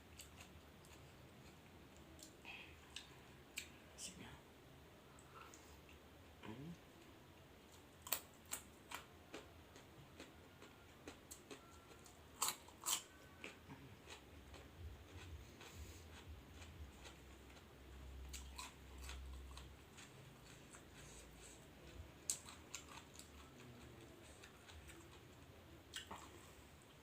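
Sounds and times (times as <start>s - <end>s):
soft low chewing: 0.0s - 27.0s.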